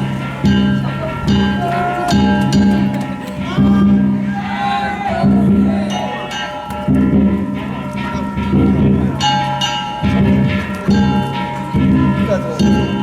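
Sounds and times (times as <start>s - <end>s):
big taiko drum booming: 0.0s - 6.1s
small hand gongs ringing: 0.0s - 13.0s
voices calling out: 0.0s - 13.0s.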